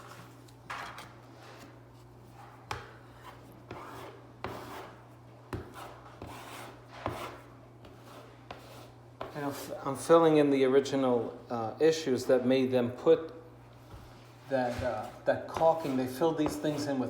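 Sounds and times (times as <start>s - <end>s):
drywall knife scraping: 0.0s - 5.0s, 5.6s - 9.7s, 14.6s - 17.0s.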